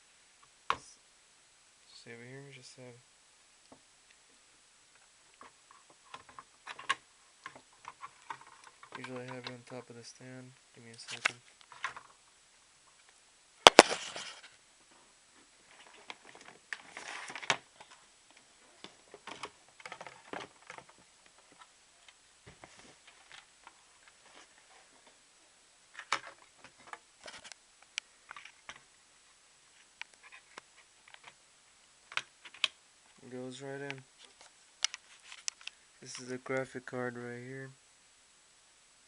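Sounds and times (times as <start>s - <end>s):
rustling: 4.9s - 25.3s, 32.1s - 36.4s
small clicks and knocks: 5.0s - 9.9s, 15.7s - 24.2s, 32.1s - 32.8s.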